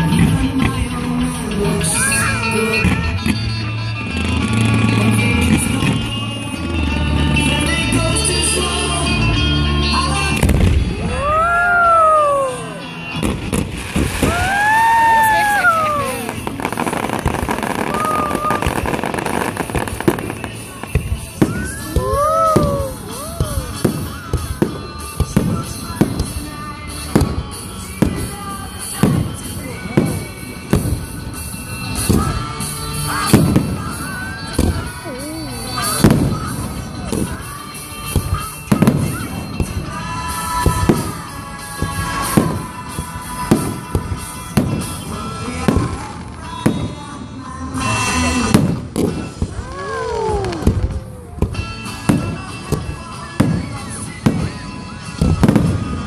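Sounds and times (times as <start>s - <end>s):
music playing: 0.0s - 56.0s
fireworks bangs: 10.2s - 56.0s.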